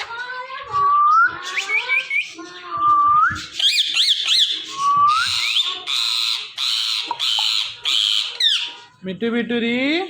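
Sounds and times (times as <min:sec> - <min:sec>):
parakeet whistling: 0:00.9 - 0:08.8
parakeet chirps: 0:03.5 - 0:08.8.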